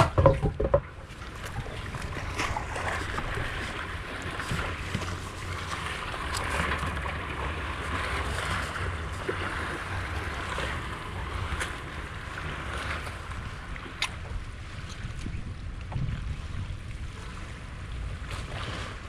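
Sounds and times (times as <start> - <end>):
faint knocks: 0.0 - 1.0
low hum: 0.0 - 9.1
water sounds: 0.0 - 19.0
wind on microphone: 12.8 - 19.0.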